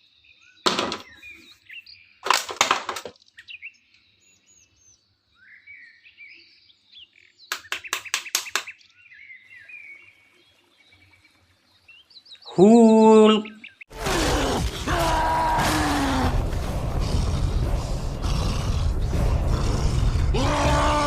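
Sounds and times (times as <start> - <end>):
small birds chirping: 0.0 - 2.4, 3.0 - 13.9.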